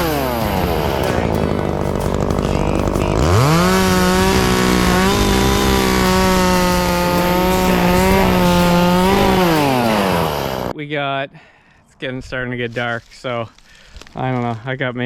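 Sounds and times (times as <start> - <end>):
chainsaw revving: 0.0 - 10.7.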